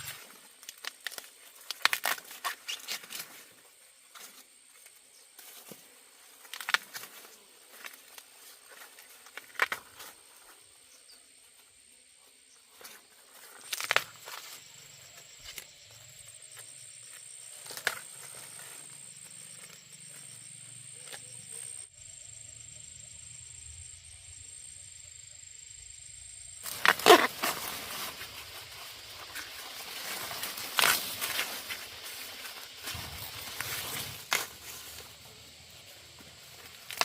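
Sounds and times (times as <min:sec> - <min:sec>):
insect trilling: 0:00.0 - 0:05.0, 0:25.9 - 0:37.0
rustling of dry plants: 0:00.0 - 0:21.8, 0:26.6 - 0:37.0.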